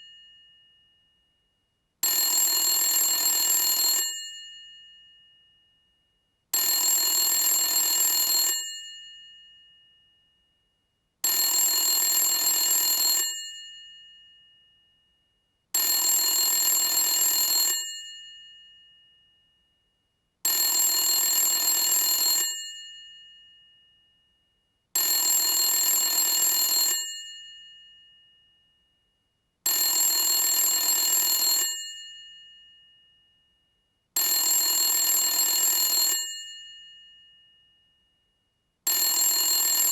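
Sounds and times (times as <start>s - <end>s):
telephone bell ringing: 2.0s - 5.2s, 6.6s - 9.7s, 11.2s - 14.5s, 15.8s - 19.0s, 20.5s - 23.7s, 25.0s - 28.3s, 29.7s - 33.0s, 34.2s - 37.5s, 38.9s - 39.9s.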